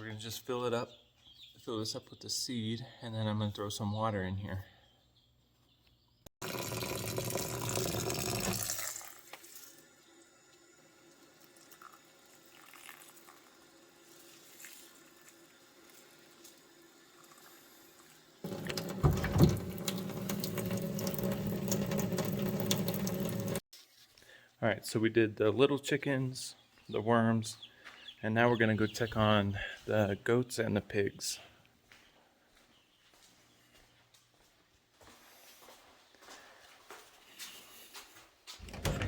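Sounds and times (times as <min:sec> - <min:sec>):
water running into container: 0:06.4 - 0:23.6.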